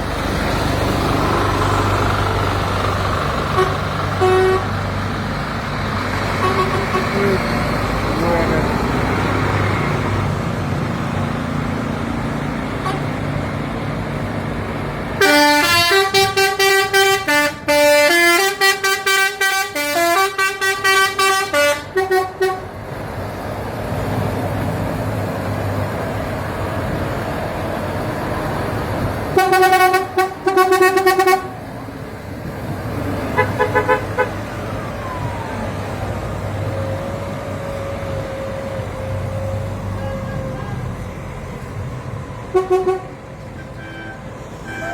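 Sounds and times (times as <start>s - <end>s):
engine rumble: 0.0s - 44.9s
musical vehicle horn: 3.5s - 4.8s, 6.4s - 7.4s, 12.8s - 13.1s, 15.2s - 22.7s, 29.4s - 31.6s, 33.4s - 34.4s, 39.9s - 40.9s, 42.5s - 44.9s.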